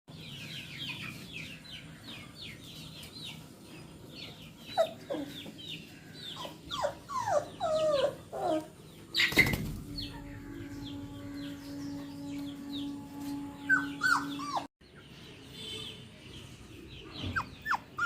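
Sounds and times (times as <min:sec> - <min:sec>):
high bird chirping: 0:00.2 - 0:16.0
puppies whining and yelping: 0:04.6 - 0:09.6, 0:13.7 - 0:14.7, 0:17.3 - 0:18.0
steady low hum: 0:09.0 - 0:14.7.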